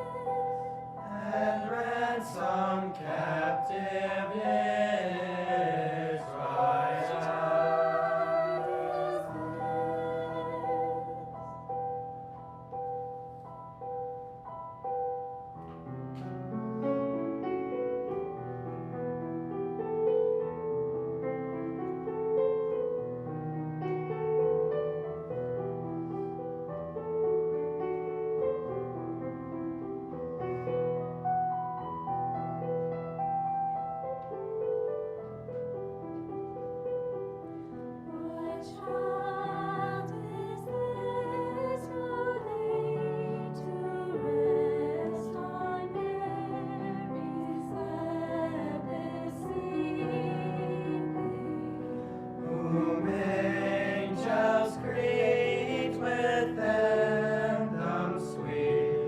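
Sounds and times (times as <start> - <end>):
choir singing: 0.0 - 11.5, 38.2 - 59.0
piano accompaniment: 0.0 - 59.0.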